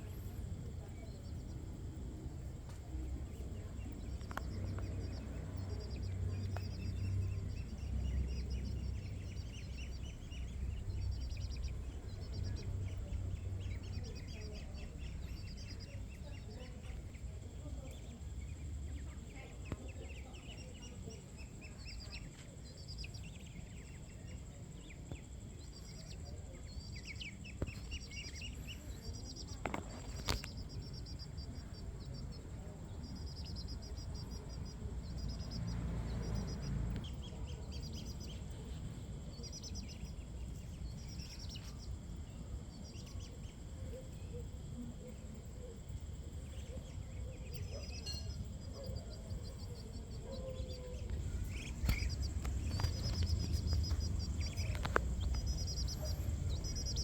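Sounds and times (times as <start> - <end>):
low background rumble: 0.0 - 57.0
high-pitched chirping trills: 3.2 - 17.2, 46.6 - 57.0.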